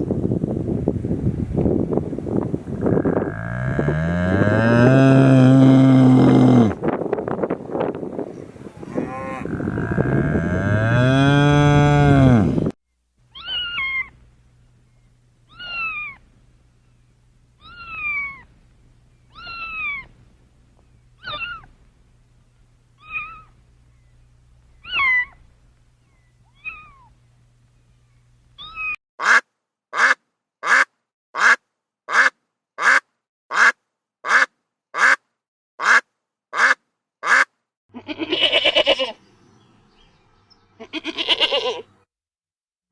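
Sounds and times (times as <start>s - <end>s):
low steady hum: 8.3s - 28.9s
cat meowing: 13.3s - 14.1s, 17.6s - 18.5s, 19.3s - 20.1s, 21.2s - 21.7s, 23.0s - 23.5s, 26.5s - 27.1s
short loud animal calls: 13.3s - 14.2s, 15.5s - 16.2s, 21.2s - 21.7s, 23.0s - 23.6s.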